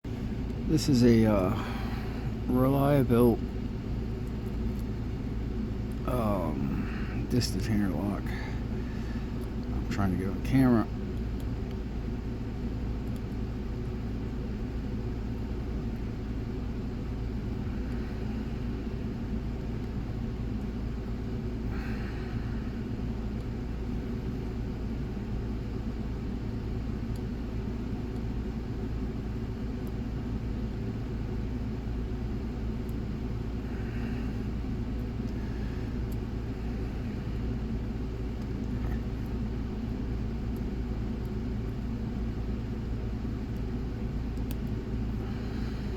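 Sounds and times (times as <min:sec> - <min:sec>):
low background rumble: 0:00.0 - 0:45.9.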